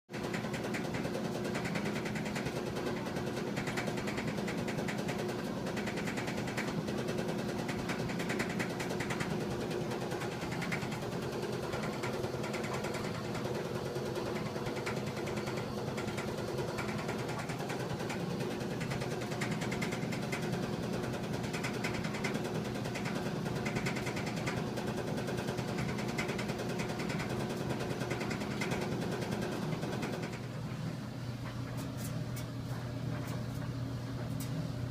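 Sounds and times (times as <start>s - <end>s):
clothes dryer clanking rattle: 0.1s - 34.9s
dryer steady hum: 0.1s - 34.9s.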